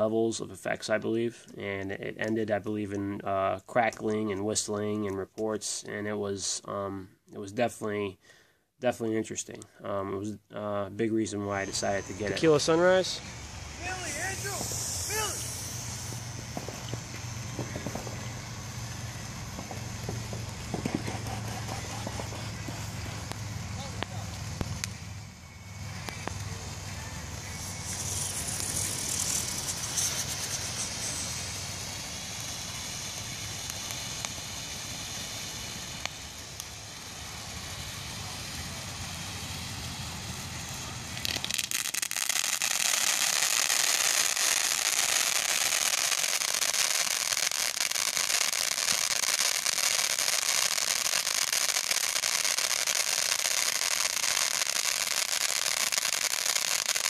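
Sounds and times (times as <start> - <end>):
firework crackling: 0.0 - 6.9, 9.3 - 57.0
firework fountain hissing: 11.0 - 57.0.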